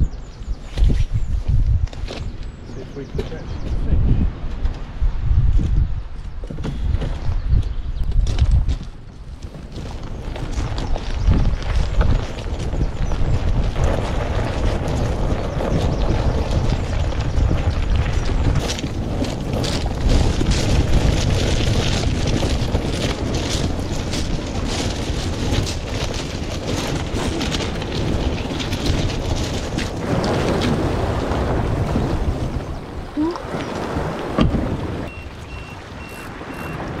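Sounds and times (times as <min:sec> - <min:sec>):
wind buffeting microphone: 0:00.0 - 0:37.0
sea water splashing against kayak: 0:18.6 - 0:37.0.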